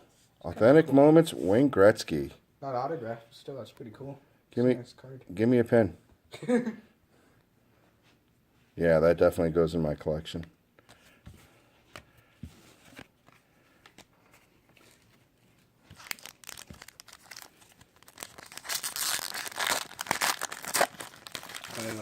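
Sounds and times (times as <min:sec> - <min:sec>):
wrapper crinkling and tearing: 0:15.9 - 0:22.0.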